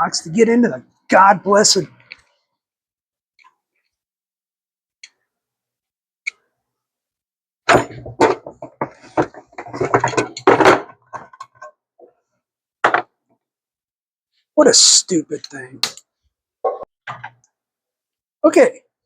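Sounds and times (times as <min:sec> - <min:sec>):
metallic clattering and knocking: 0:07.7 - 0:11.7.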